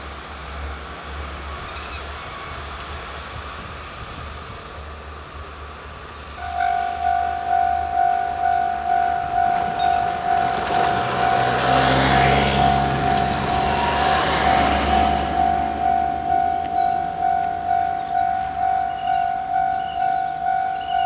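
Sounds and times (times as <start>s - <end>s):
train passing: 0.0s - 21.0s
level-crossing warning bell: 6.4s - 21.0s.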